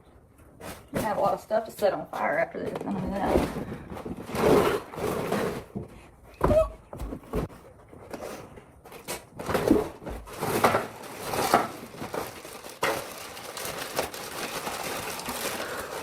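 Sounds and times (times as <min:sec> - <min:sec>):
thumps and knocks: 0:05.7 - 0:08.1.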